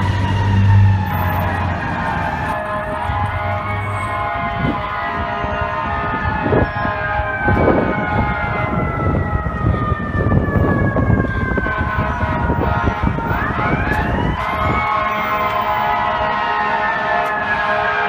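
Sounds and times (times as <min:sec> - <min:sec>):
truck rumble: 0:00.0 - 0:06.6
street traffic: 0:00.0 - 0:18.0.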